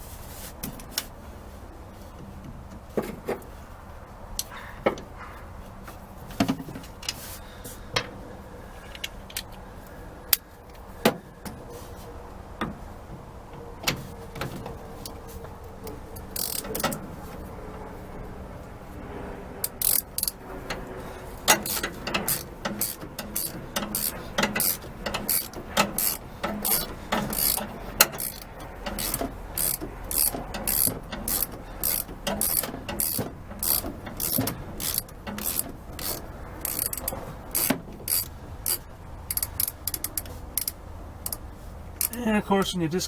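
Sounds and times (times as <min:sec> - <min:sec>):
ratchet wrench clicking: 0:16.2 - 0:17.0, 0:19.6 - 0:20.9, 0:21.5 - 0:41.4.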